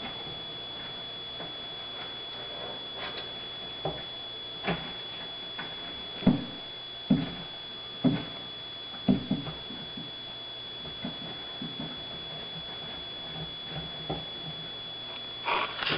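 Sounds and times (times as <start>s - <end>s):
tortoise grunting wheezes: 15.4s - 15.9s.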